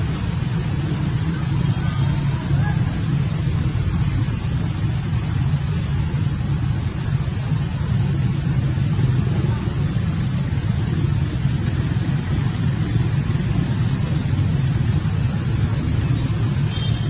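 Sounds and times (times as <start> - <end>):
steady low rumbling: 0.0 - 17.0.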